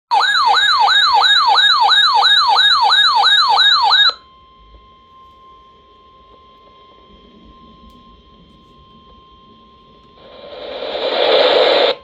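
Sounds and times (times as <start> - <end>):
electronic yelp siren: 0.1 - 12.0
faint steady tone: 4.2 - 12.0.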